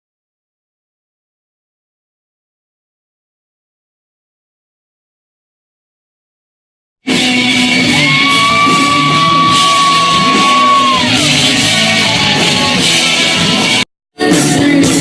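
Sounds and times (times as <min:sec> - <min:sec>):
rock music: 0:07.0 - 0:15.0.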